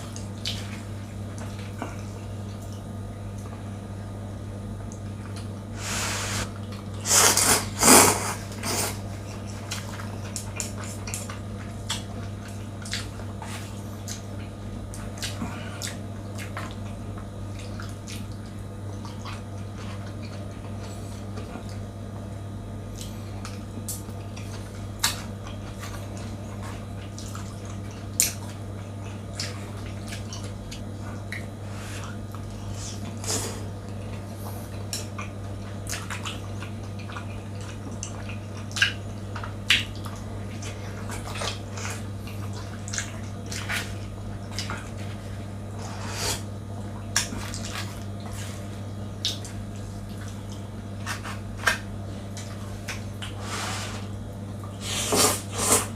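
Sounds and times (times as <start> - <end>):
slurping: 5.8 - 9.0.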